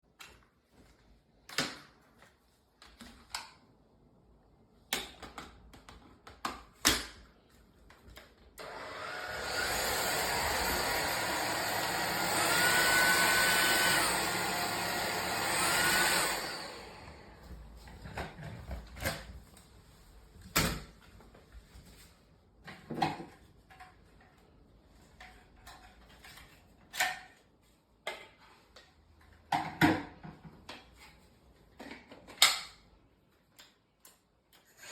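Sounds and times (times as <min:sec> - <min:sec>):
vacuum motor whining: 0:08.6 - 0:17.5.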